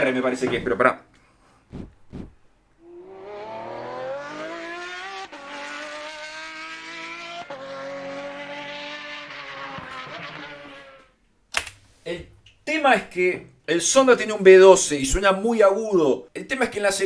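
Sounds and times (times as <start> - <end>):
race car engine accelerating: 2.8 - 11.2.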